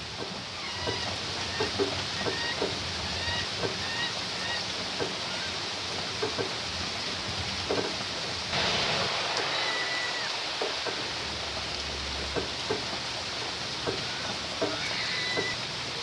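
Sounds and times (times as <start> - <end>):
steady rain falling: 0.0 - 16.0
hens calling: 13.8 - 15.6.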